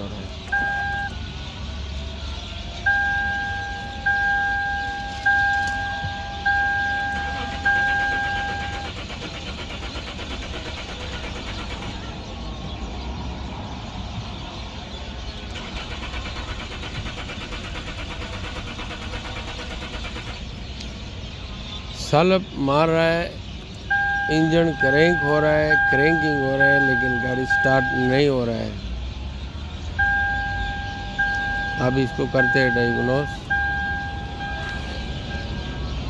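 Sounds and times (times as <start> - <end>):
warning chime beeps: 0.0 - 1.2, 2.9 - 9.0, 23.9 - 28.7, 30.0 - 36.0
starter cranking car engine: 2.9 - 12.4, 15.4 - 20.9, 23.9 - 28.2.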